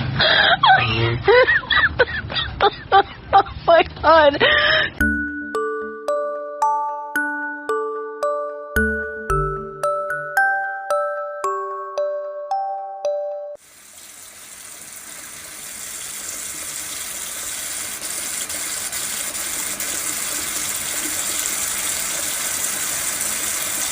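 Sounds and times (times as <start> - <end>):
short chime melody: 5.0 - 13.6
running water hissing: 13.6 - 23.9.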